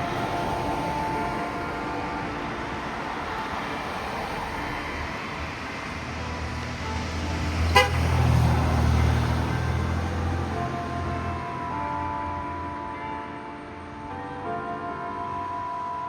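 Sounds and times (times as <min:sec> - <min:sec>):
faint church bell tones: 0:00.0 - 0:05.1, 0:10.0 - 0:16.0
short sharp horn toot: 0:07.8 - 0:08.1.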